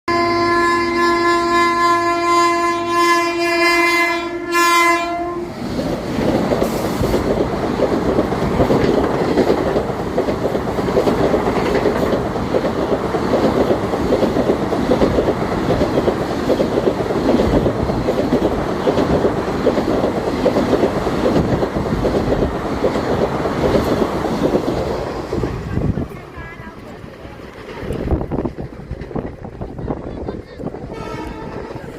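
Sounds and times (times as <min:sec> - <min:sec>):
train horn: 0:00.1 - 0:05.6, 0:30.9 - 0:31.9
train rumbling on track: 0:00.1 - 0:31.9.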